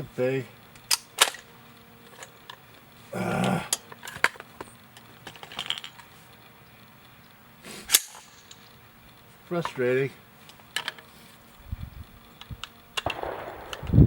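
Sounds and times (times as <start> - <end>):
rifle handling clicks: 0.7 - 9.8, 10.4 - 11.5, 12.2 - 14.0
sharp crack: 12.6 - 14.0.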